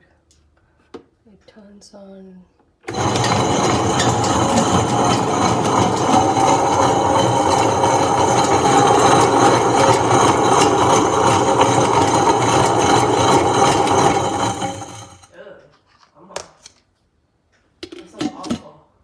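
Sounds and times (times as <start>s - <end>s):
wet grinder motor hum: 2.9s - 15.3s.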